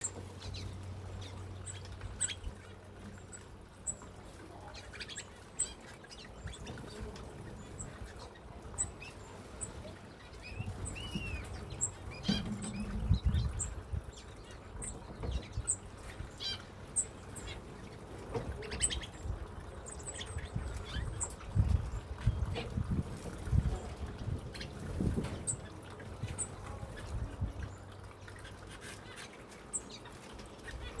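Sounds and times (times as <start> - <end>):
birds chirping: 0.0 - 31.0
low whistled bird calls: 10.5 - 13.0.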